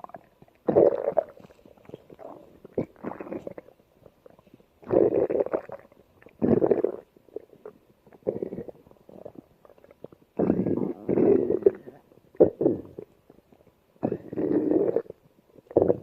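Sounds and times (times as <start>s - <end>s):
stomach growling: 0.0s - 16.0s.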